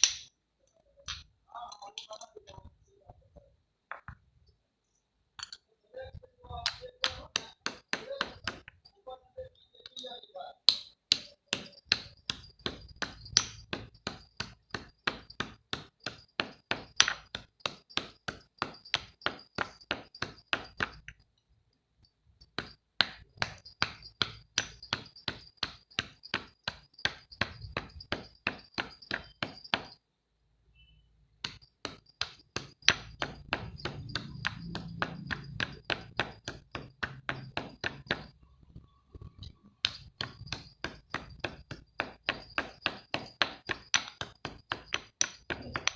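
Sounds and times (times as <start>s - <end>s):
rapid hard knocks: 31.4s - 38.3s, 39.9s - 45.9s.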